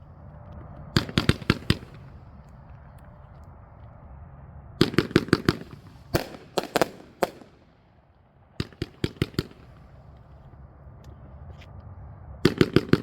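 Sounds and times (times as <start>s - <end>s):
fireworks firing in sharp cracks: 1.0s - 2.2s, 4.8s - 7.9s, 8.5s - 10.1s, 12.4s - 13.0s.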